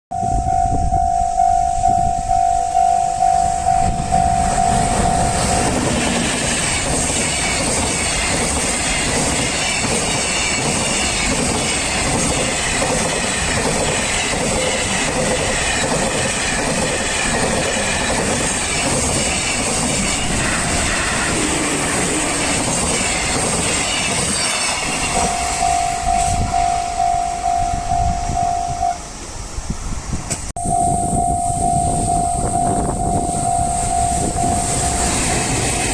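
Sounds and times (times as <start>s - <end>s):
level crossing bell dinging: 0.1s - 5.8s, 25.2s - 29.0s, 30.6s - 35.0s
train wheels clattering over rails: 4.6s - 26.5s, 33.8s - 35.9s.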